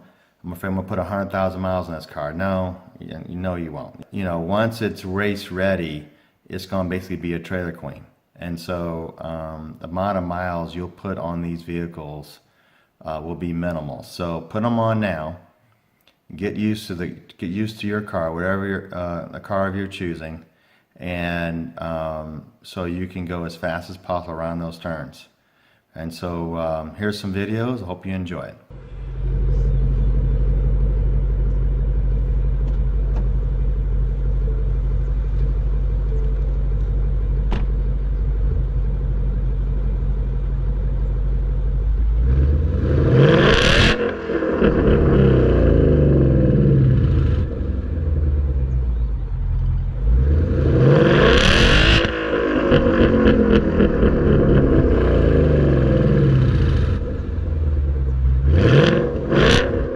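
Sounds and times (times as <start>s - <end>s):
car engine revving: 28.7s - 59.9s.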